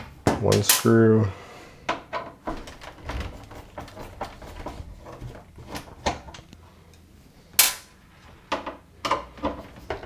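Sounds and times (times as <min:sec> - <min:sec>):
sharp loud click: 0:00.7 - 0:00.9, 0:07.6 - 0:07.9.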